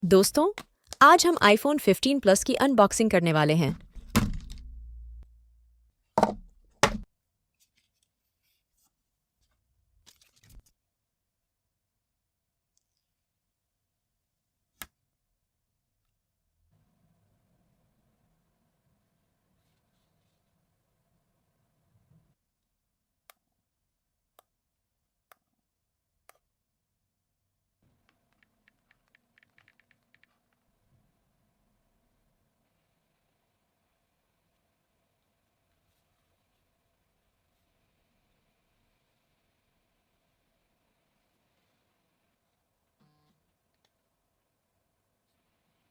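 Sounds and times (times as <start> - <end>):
sharp knocks: 3.8 - 5.2, 6.2 - 7.1
run of small clicks: 28.0 - 30.6.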